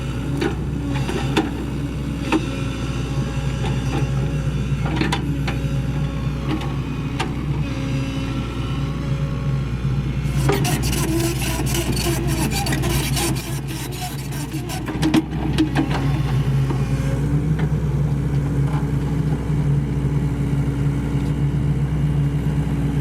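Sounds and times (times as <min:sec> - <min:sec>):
excavator diesel engine running: 0:00.0 - 0:23.0
scraping and clatter: 0:10.3 - 0:15.9.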